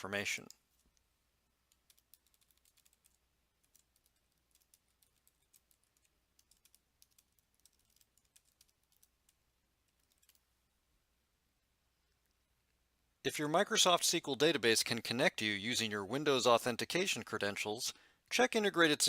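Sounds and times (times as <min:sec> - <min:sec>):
typing on computer keyboard: 0:01.7 - 0:10.5.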